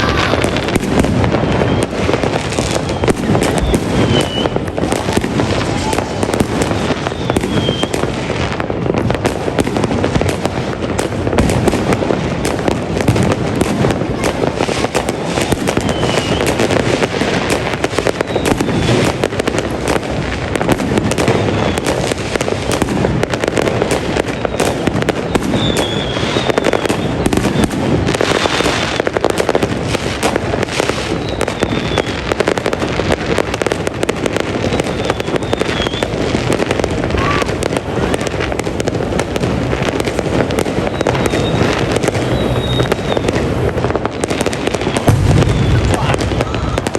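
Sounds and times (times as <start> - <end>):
fireworks crackling and banging: 0.0 - 46.9
high falling whistles: 2.7 - 4.6, 40.8 - 43.4, 45.2 - 46.8.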